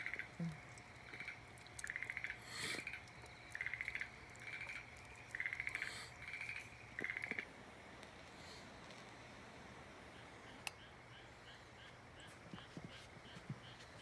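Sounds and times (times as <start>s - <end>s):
frogs calling with pulsed trills: 0.0s - 7.6s.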